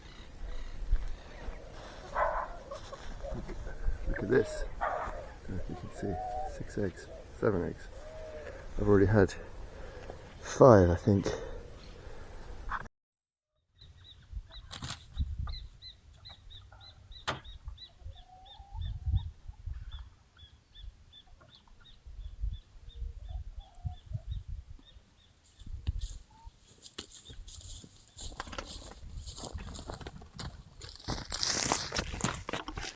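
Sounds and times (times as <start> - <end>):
bird chirping: 0.0 - 12.9
wind rumbling on microphone: 0.0 - 12.9, 14.3 - 15.8, 18.0 - 20.1.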